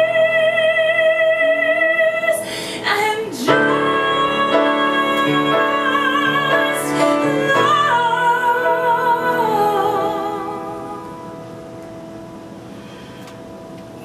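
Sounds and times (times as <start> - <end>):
woman singing with vibrato: 0.0 - 11.6
piano chords: 0.0 - 14.0.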